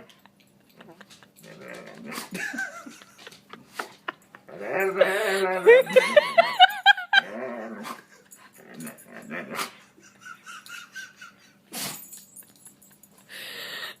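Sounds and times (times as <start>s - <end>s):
dog grumbling whines: 4.5s - 6.0s.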